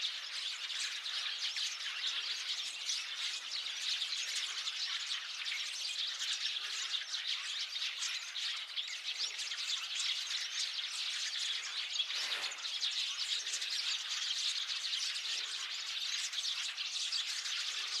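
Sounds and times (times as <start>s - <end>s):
flock of sparrows chirping: 0.0s - 18.0s.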